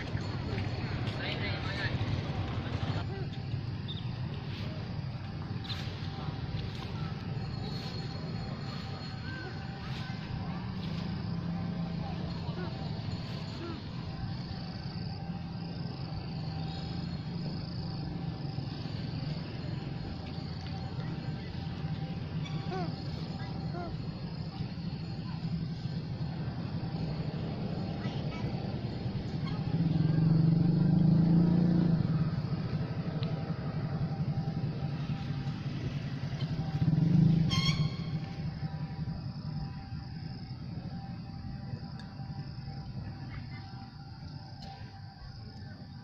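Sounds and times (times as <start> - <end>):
insects buzzing: 0.0 - 46.0
vehicle engines passing: 0.0 - 46.0.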